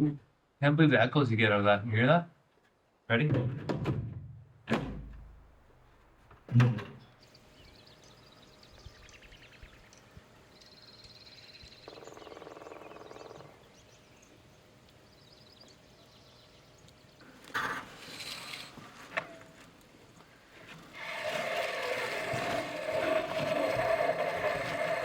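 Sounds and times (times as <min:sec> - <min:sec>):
faint bird chirps: 0:07.0 - 0:17.4.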